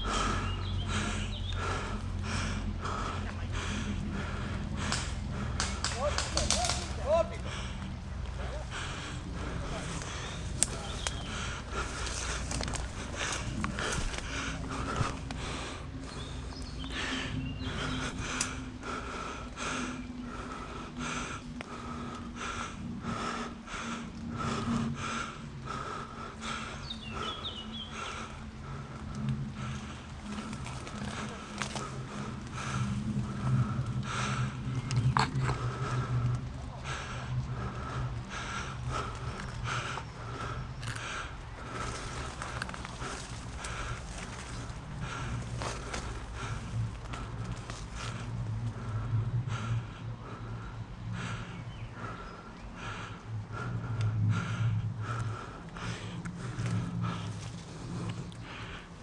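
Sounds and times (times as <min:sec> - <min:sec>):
low steady hum: 0:00.0 - 0:59.0
person panting hard: 0:00.0 - 0:59.0
steady low rumble: 0:00.0 - 0:59.0
footsteps: 0:41.6 - 0:48.8.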